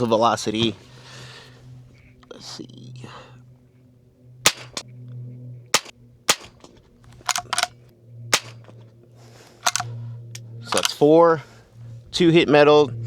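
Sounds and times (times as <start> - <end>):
rifle shots: 4.5 - 4.8, 5.8 - 6.6, 8.4 - 8.6
metallic clicks: 5.8 - 7.8, 8.4 - 8.7, 9.6 - 9.9, 10.7 - 11.0.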